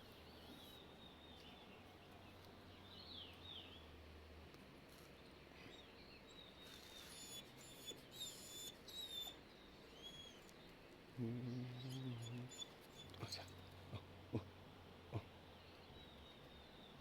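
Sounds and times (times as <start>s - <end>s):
low background noise: 0.0s - 17.0s.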